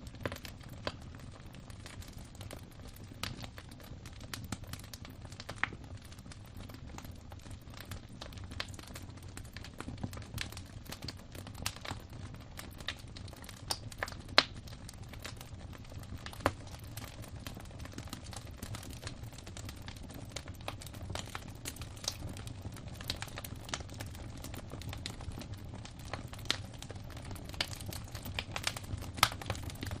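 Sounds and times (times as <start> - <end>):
fire crackling and snapping: 0.0 - 30.0
low rumble of flames: 0.0 - 30.0
loud pops of fire: 17.8 - 30.0.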